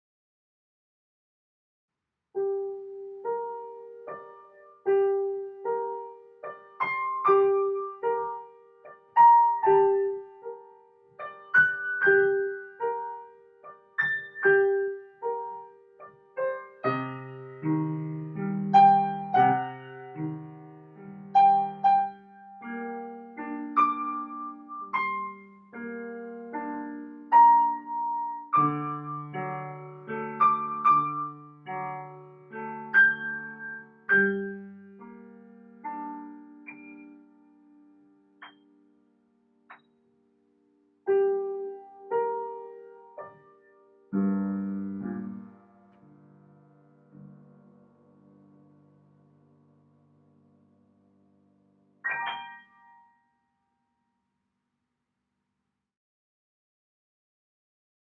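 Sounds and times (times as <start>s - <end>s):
keyboard melody: 52.0s - 53.2s.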